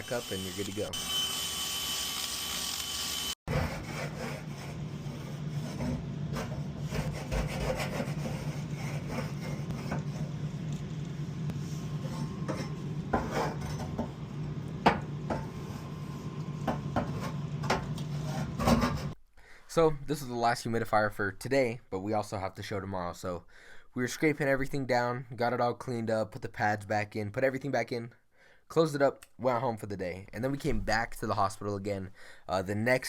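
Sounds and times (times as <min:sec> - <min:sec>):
steady low hum: 0:03.6 - 0:19.1.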